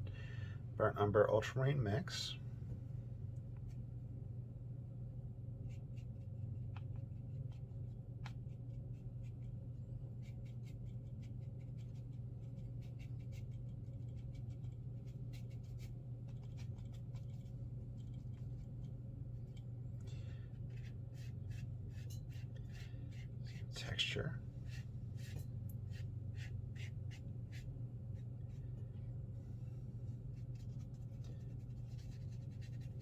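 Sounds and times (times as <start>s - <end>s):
steady low hum: 0.0s - 33.0s
brush scrubbing on paper: 10.2s - 19.0s, 20.5s - 28.7s, 30.1s - 33.0s.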